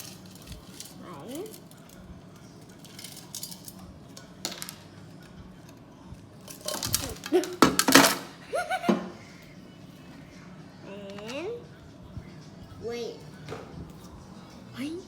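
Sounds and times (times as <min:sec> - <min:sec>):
ice cubes clinking on a plate: 0:02.8 - 0:03.8.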